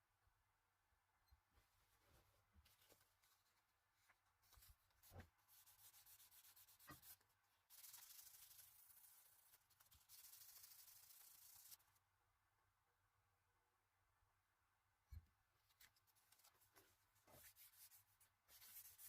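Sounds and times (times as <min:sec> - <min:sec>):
scratchy sanding strokes: 0:05.5 - 0:11.8, 0:17.4 - 0:19.0.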